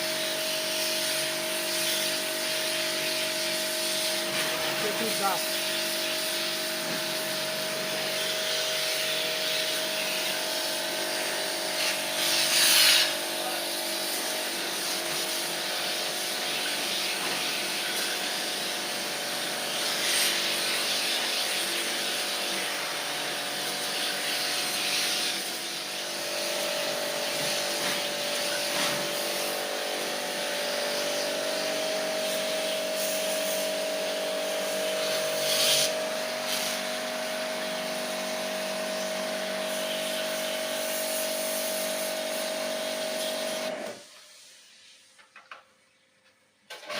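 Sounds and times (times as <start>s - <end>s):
pressure-washer motor running: 0.0s - 44.9s, 46.7s - 46.9s
water spray hissing: 0.1s - 36.9s.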